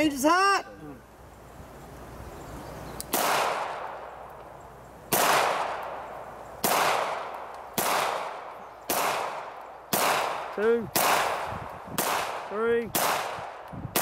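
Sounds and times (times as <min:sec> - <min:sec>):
handgun shots with echo: 0:03.1 - 0:04.0, 0:05.1 - 0:14.0.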